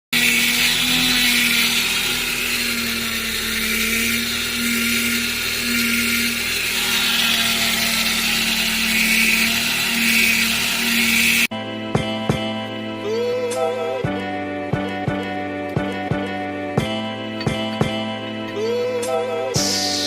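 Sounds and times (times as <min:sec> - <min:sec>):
engine running: 0:00.1 - 0:11.5
power steering pump whining: 0:00.2 - 0:11.5, 0:16.8 - 0:18.8.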